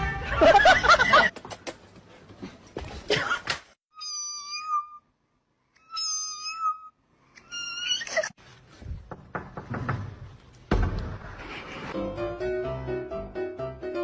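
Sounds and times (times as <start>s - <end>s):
knocks and thump: 8.8s - 11.5s.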